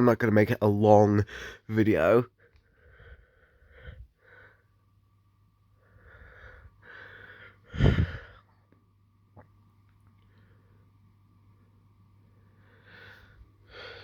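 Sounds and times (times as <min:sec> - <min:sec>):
person breathing into microphone: 0:06.0 - 0:08.4.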